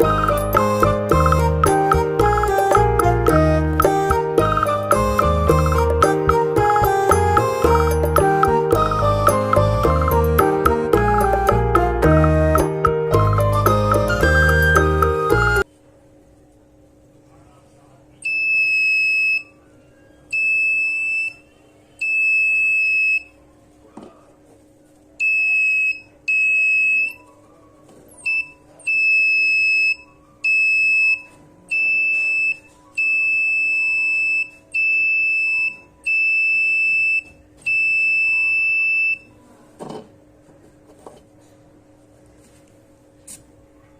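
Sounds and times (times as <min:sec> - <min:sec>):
alarm buzzer beeping: 0:20.3 - 0:23.3, 0:28.2 - 0:39.3.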